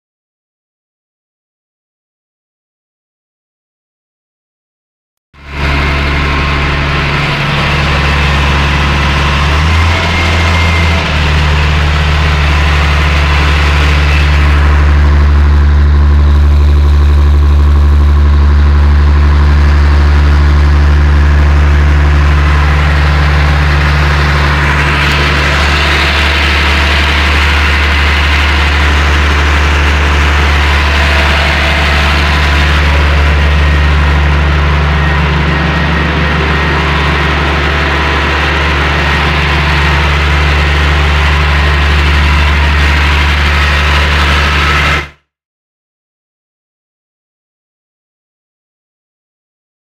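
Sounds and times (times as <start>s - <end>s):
tractor diesel engine idling: 5.4s - 45.1s.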